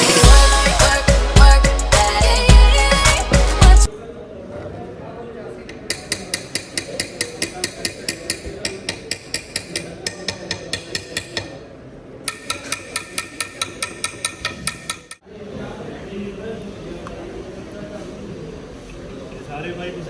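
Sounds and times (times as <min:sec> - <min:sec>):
hammer striking metal: 0:05.9 - 0:11.6, 0:12.3 - 0:15.2.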